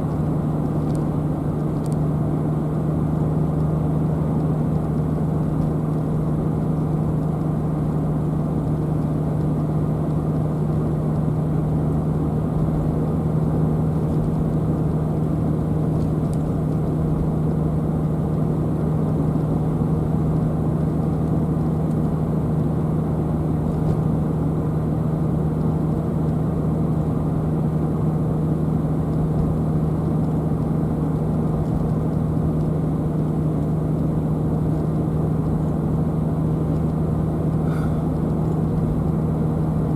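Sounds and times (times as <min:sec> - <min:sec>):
car engine and road rumble: 0:00.0 - 0:39.9.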